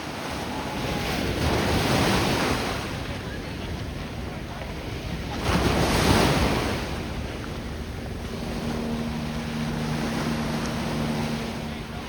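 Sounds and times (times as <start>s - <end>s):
ocean waves breaking: 0.0s - 12.0s
steady wash of waves: 0.0s - 12.0s.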